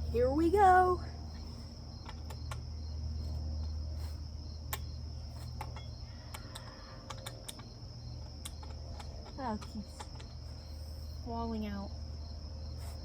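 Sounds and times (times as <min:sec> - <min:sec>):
low hum: 0:00.0 - 0:13.0
wrench and nut clicking: 0:05.6 - 0:10.4.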